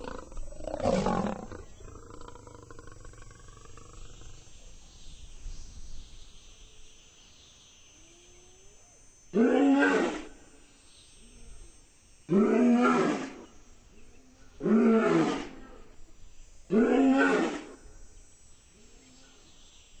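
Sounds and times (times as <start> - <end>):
lion roaring: 0.0 - 4.4.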